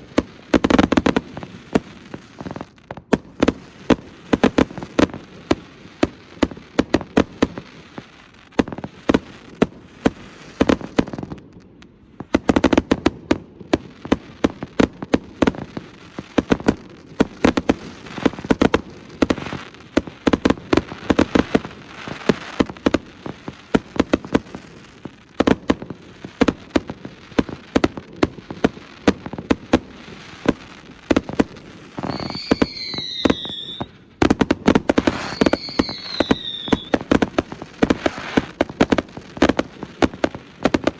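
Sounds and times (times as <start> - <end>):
fireworks bangs and crackling: 0.0 - 40.9
firework whistles sliding down: 31.9 - 34.0, 34.8 - 37.0, 37.8 - 38.5.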